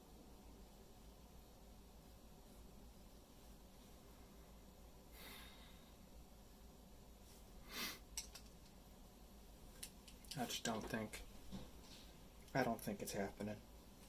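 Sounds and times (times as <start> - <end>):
person breathing out: 5.1 - 6.0.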